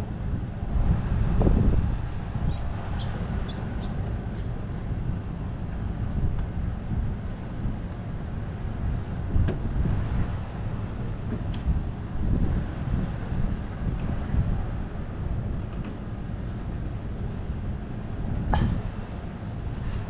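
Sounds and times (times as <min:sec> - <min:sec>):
wind rumble on microphone: 0:00.0 - 0:20.0.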